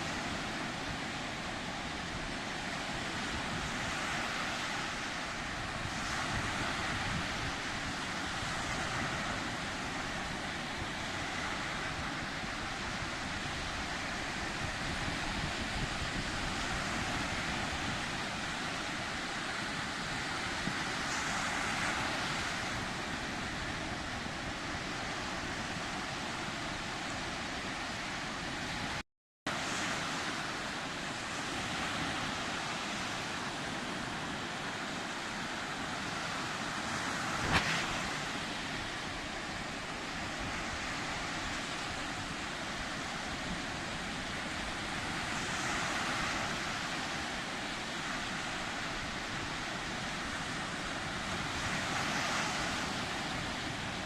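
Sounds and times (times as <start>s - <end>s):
sea surf hissing: 0.0s - 54.0s.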